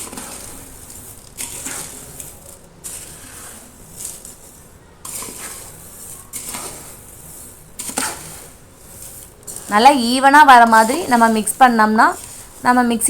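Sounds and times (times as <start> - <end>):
dry seeds scraping on a plate: 0.0 - 13.0.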